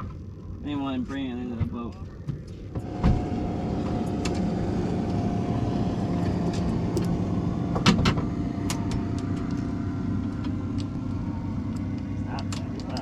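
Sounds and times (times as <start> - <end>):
small motor humming: 2.7 - 13.0
sharp clicks and knocks: 6.4 - 9.7, 10.3 - 13.0.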